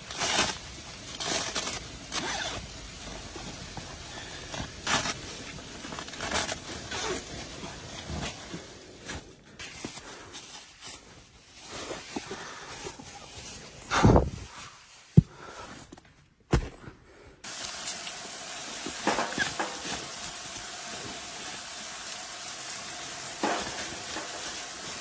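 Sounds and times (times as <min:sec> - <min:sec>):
rustling and scraping of gear: 0:00.0 - 0:17.0.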